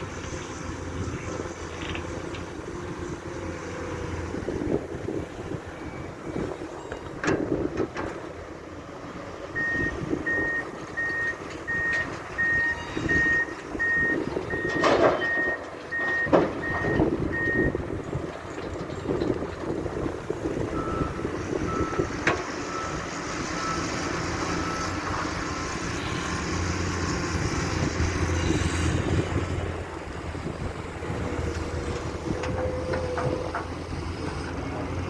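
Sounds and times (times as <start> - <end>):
heavy machinery diesel engine: 0.0 - 35.0
loud clanks and knocks: 6.9 - 8.3, 14.5 - 17.5
reversing alarm beeping: 9.5 - 17.8, 20.7 - 25.0.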